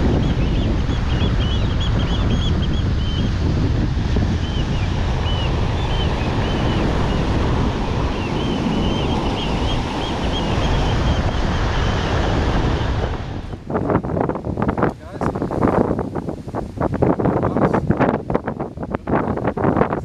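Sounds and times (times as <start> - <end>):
wind buffeting microphone: 0.0 - 20.0
surf breaking: 2.8 - 13.9.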